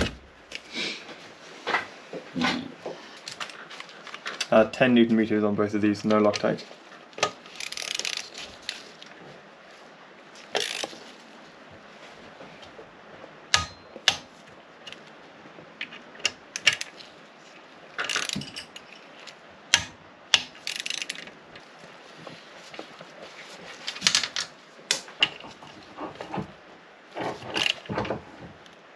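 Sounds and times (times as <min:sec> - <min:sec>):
sharp wrench clicks: 0:07.2 - 0:08.8, 0:10.5 - 0:10.9, 0:18.0 - 0:18.9, 0:19.7 - 0:21.3
wrench ratcheting: 0:07.2 - 0:08.8, 0:10.5 - 0:11.0, 0:18.0 - 0:19.0, 0:19.8 - 0:21.3.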